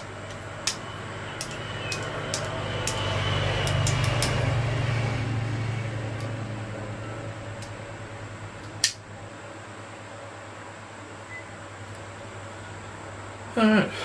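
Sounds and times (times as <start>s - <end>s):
vehicle engine passing: 0.0s - 8.6s
sharp click: 8.6s - 9.0s.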